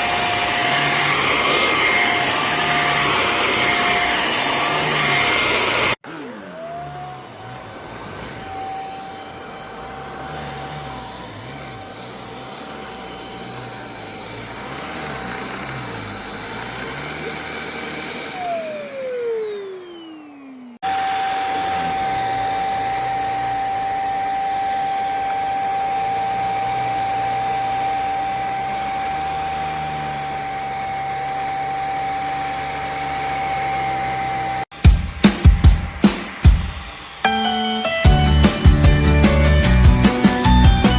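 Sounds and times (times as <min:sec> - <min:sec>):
vacuum cleaner motor whine: 0:00.0 - 0:40.9.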